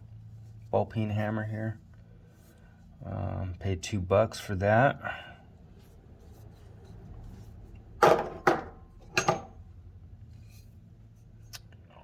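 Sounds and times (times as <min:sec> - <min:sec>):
hammer heads knocking on hard surface: 0:08.0 - 0:09.5
metallic ring: 0:09.0 - 0:09.6.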